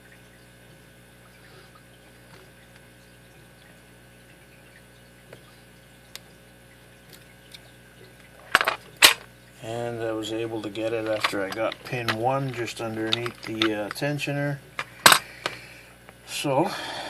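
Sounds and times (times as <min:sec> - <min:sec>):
low steady hiss: 0:08.2 - 0:17.0
lock pick scraping and clicking: 0:08.6 - 0:09.3, 0:10.9 - 0:14.0.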